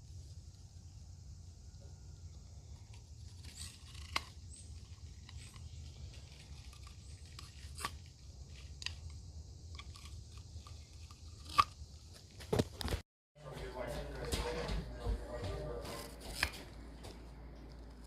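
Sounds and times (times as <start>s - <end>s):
low hum: 0.0s - 12.3s.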